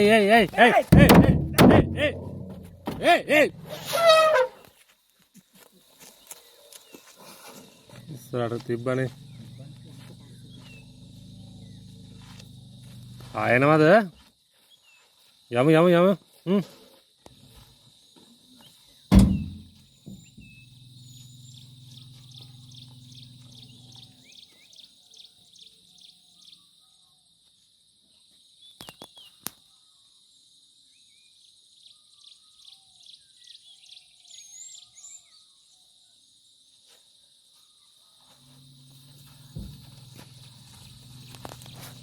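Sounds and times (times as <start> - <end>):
loud thump: 0.7 - 4.0, 19.1 - 20.6
birds chirping: 6.2 - 14.0, 18.6 - 26.6, 38.6 - 42.0
pulsing insect trills: 6.2 - 26.2, 38.2 - 42.0
insects shrilling: 38.5 - 42.0.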